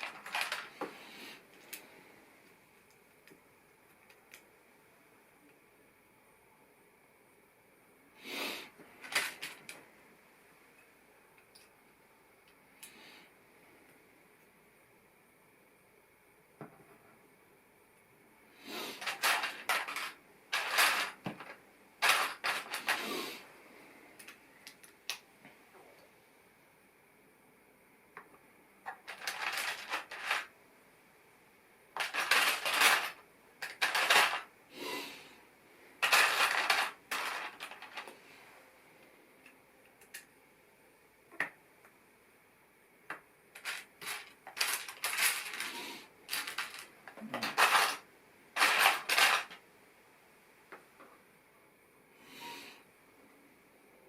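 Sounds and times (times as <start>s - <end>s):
plastic bricks clicking and clattering: 0.0s - 0.8s, 9.0s - 9.8s, 19.0s - 23.0s, 28.8s - 30.5s, 32.0s - 34.5s, 36.0s - 38.1s, 43.6s - 48.0s, 48.6s - 49.6s.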